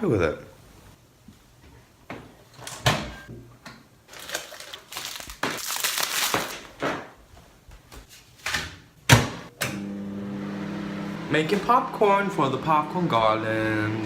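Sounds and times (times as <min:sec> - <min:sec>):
packaging crinkling and rustling: 0:04.1 - 0:06.8.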